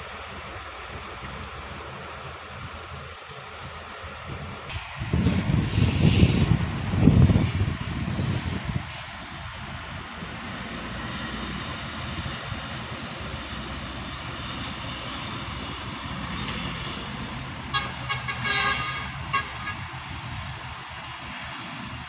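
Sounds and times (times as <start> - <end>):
heavy diesel machinery running: 0.0 - 22.0
vehicle horn toots: 17.7 - 19.9.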